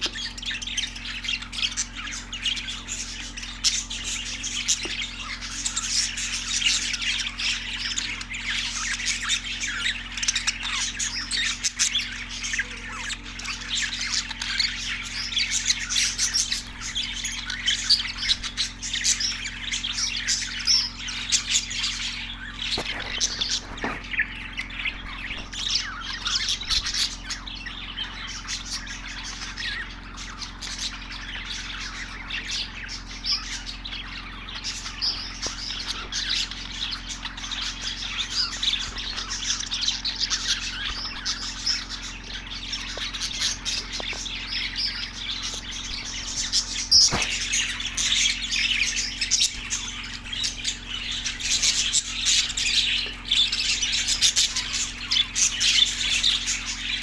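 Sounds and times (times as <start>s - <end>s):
budgerigars chirping and squawking: 0.0s - 57.0s.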